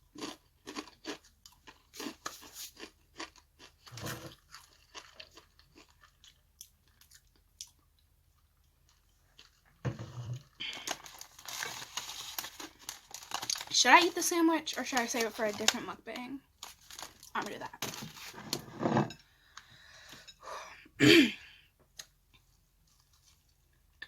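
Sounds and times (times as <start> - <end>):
crunching crispy fried food: 0.1 - 9.8, 10.5 - 13.9, 16.5 - 17.6
wrapper rustling: 10.6 - 15.9, 16.6 - 18.5.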